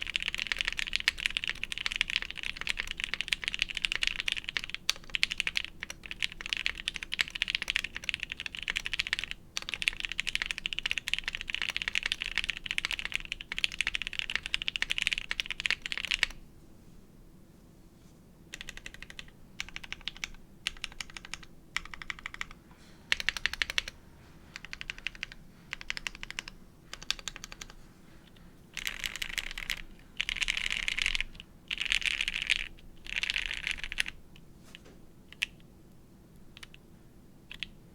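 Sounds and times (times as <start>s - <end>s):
mechanical keyboard typing: 0.0s - 16.4s, 18.5s - 24.0s, 24.6s - 27.8s, 28.8s - 34.2s, 37.5s - 37.8s.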